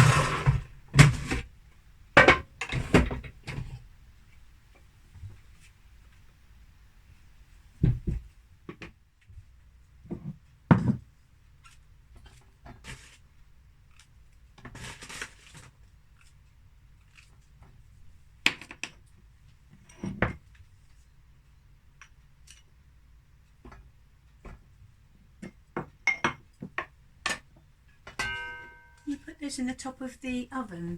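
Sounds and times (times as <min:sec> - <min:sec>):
pans and dishes clinking: 0:25.8 - 0:26.4, 0:28.1 - 0:29.2.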